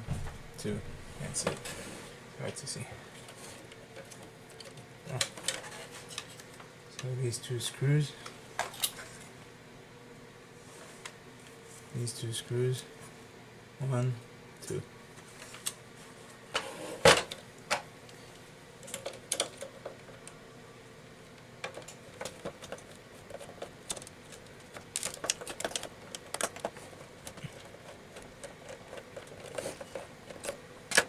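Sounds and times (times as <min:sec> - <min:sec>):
plastic parts handled: 0:21.6 - 0:31.0.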